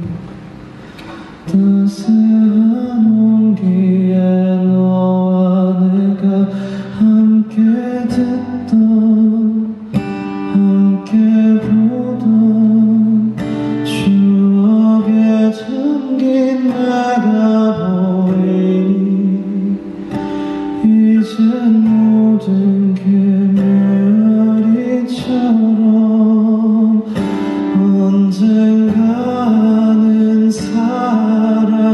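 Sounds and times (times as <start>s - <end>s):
acoustic guitar: 0.0s - 31.9s
man singing long notes: 1.4s - 9.9s, 10.5s - 20.1s, 20.7s - 31.9s.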